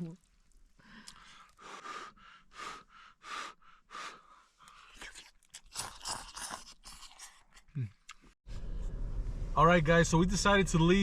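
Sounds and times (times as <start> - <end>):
person eating noisily: 4.7 - 8.3.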